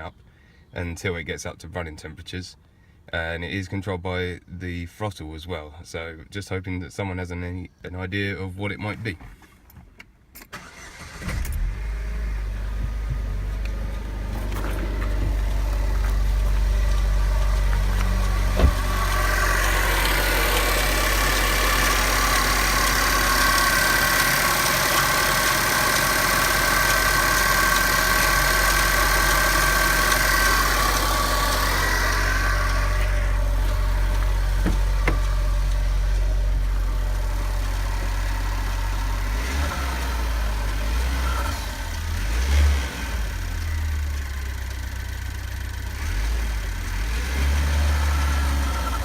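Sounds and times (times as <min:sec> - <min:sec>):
car engine starting and running: 0:10.4 - 0:49.0
faint metallic engine ticking: 0:12.4 - 0:42.3.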